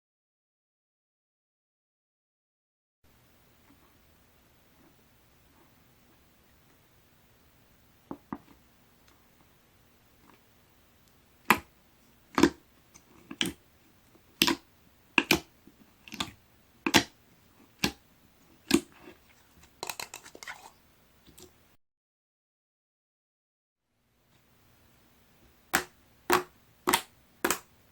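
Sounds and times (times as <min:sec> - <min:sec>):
slime crackling: 0:12.3 - 0:13.6
slime squeezed popping and clicking: 0:14.4 - 0:14.6.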